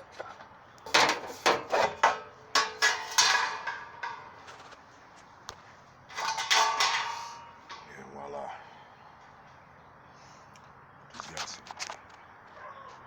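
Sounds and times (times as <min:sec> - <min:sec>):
metal rattling and scraping: 0:00.1 - 0:04.9, 0:06.1 - 0:08.1
sheet metal clanking: 0:00.9 - 0:04.4, 0:06.1 - 0:07.9.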